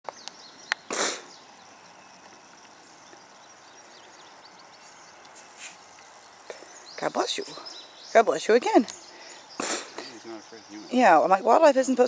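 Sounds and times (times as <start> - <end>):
outdoor background noise: 0.0 - 12.0
deer sneezing: 0.9 - 1.3, 9.6 - 10.2.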